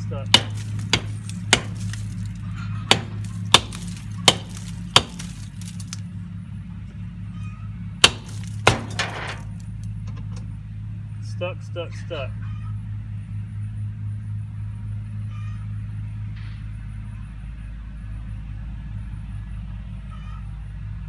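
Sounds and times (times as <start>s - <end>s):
metal striking metal: 0.4s - 2.3s, 2.9s - 6.0s, 8.0s - 9.6s.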